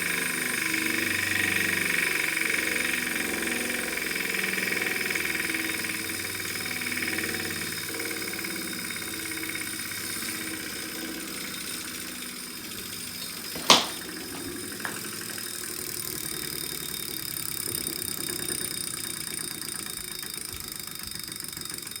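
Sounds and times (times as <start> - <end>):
bike trainer mechanical noise: 0.0 - 22.0.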